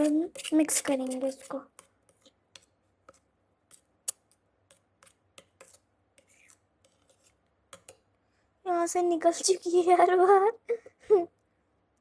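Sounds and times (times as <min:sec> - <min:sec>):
spoon scraping a bowl: 0:00.0 - 0:08.1.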